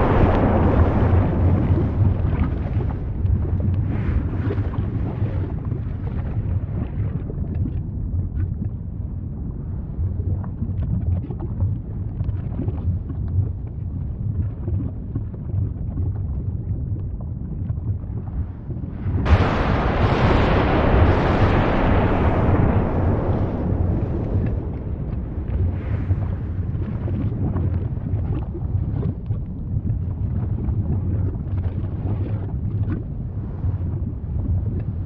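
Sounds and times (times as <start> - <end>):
faint crackles: 0.0 - 8.8, 14.4 - 35.0
deep volcano rumble: 0.0 - 35.0.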